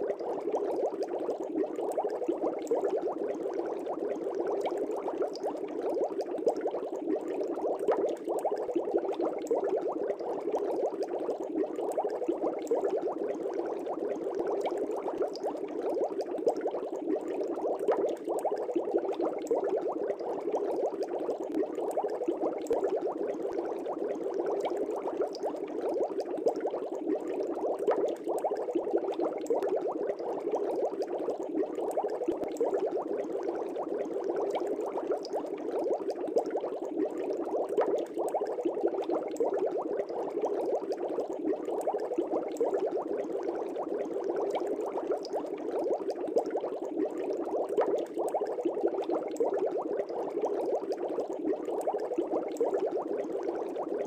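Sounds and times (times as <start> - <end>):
aquarium air bubbling: 0.0 - 54.0.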